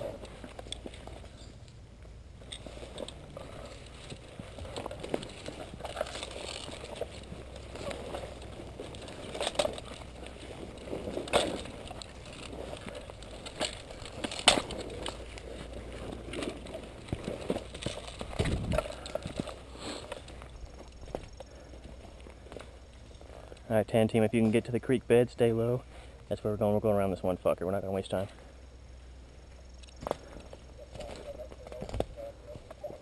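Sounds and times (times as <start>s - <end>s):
twigs snapping: 2.4s - 23.6s.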